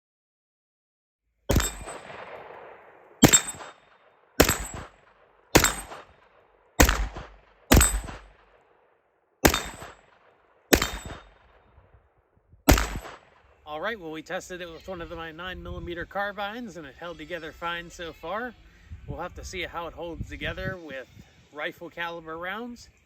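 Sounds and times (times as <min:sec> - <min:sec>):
bullet ringing steel target: 0:01.5 - 0:08.5, 0:09.4 - 0:11.6, 0:12.7 - 0:13.4
gunshots: 0:01.5 - 0:08.6, 0:09.4 - 0:11.6, 0:12.7 - 0:13.5.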